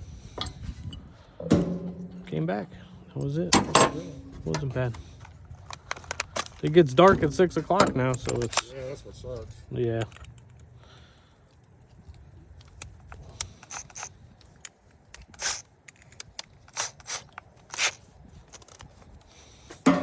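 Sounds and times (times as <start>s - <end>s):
metal parts scraping: 0.4s - 6.7s, 13.4s - 14.2s, 15.2s - 18.9s
hand tools clicking: 15.2s - 18.0s.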